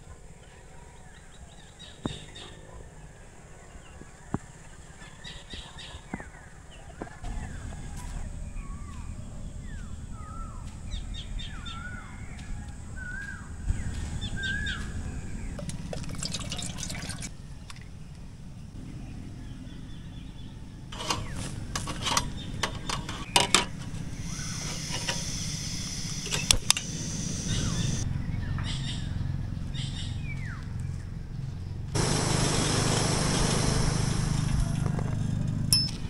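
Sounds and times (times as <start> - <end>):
bird swooping whistles: 24.2 - 26.1, 27.1 - 28.0.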